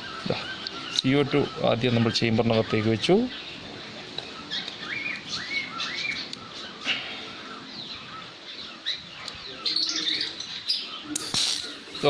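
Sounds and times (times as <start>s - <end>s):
small birds chirping: 0.0s - 12.0s.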